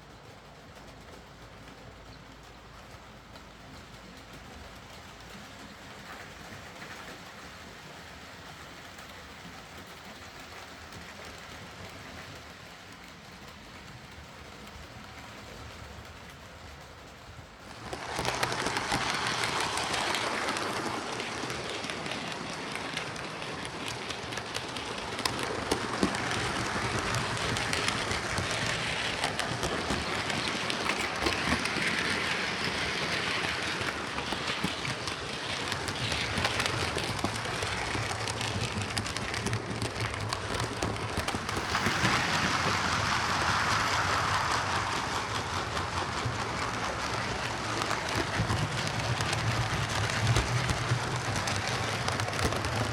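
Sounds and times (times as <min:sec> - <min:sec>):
wheels rattling on rails: 0:00.0 - 0:52.9
model train motor whirring: 0:17.7 - 0:52.9.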